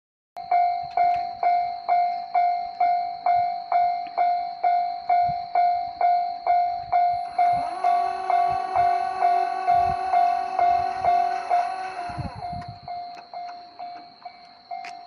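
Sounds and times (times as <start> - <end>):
steady tones: 6.8 - 14.2.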